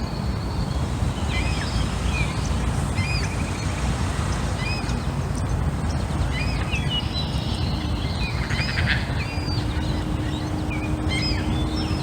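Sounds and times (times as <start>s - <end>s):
birds chirping and whistling: 6.3s - 12.0s.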